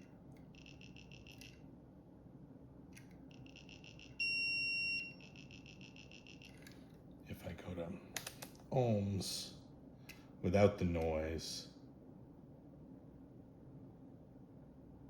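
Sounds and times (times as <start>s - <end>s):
multimeter continuity beeper: 3.3s - 6.6s.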